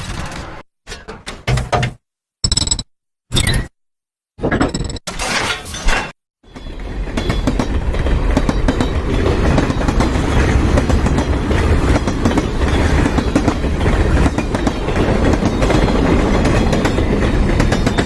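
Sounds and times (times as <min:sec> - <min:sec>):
wheels clattering over rail joints: 0:05.1 - 0:06.1
train rumbling on track: 0:06.5 - 0:18.0.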